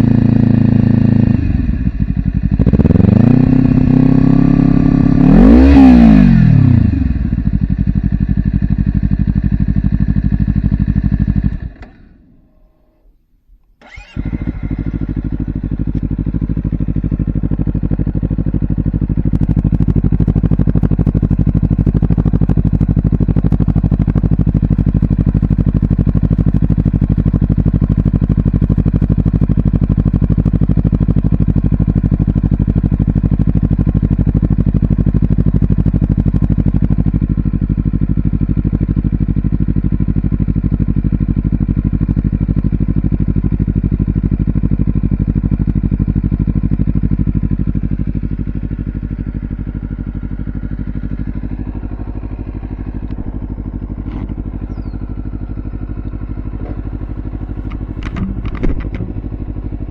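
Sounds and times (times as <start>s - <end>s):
motorcycle engine idling: 0.0s - 12.5s, 13.8s - 59.9s.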